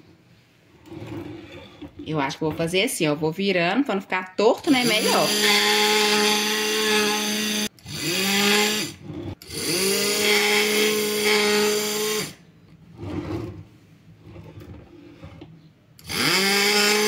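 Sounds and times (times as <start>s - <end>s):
fabric-cutting machine whining: 4.6s - 12.4s, 16.0s - 17.0s.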